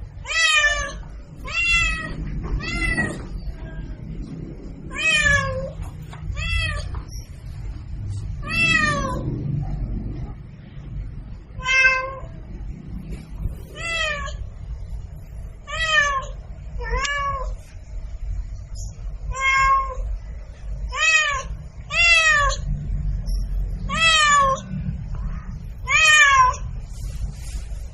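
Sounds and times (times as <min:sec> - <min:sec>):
low steady rumble: 0:00.0 - 0:27.9
cat meowing: 0:00.2 - 0:03.4, 0:04.9 - 0:07.2, 0:08.4 - 0:09.3, 0:11.6 - 0:12.4, 0:13.7 - 0:14.5, 0:15.6 - 0:17.6, 0:19.3 - 0:20.1, 0:20.9 - 0:22.7, 0:23.9 - 0:24.7, 0:25.8 - 0:26.7.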